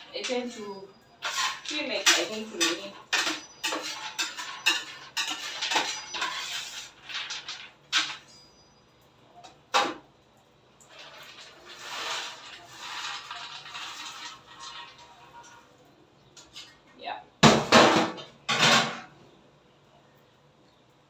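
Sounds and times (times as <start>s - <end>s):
kitchenware clattering: 0.0s - 8.5s, 16.4s - 19.2s.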